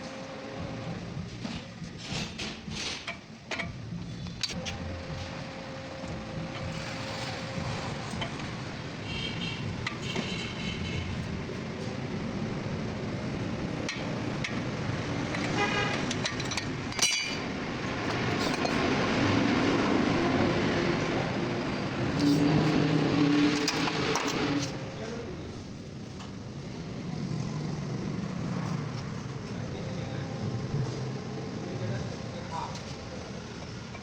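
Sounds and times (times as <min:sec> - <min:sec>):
road traffic noise: 0:00.0 - 0:34.0
car horn toots: 0:09.0 - 0:11.2, 0:15.4 - 0:16.2.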